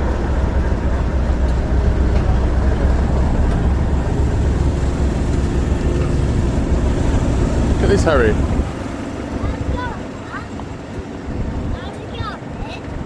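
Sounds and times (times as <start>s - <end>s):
diesel locomotive engine rumbling: 0.0s - 13.0s.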